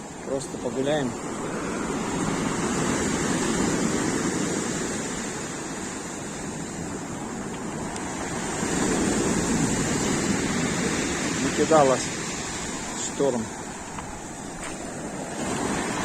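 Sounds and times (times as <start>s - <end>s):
waves breaking on beach: 0.0s - 16.0s.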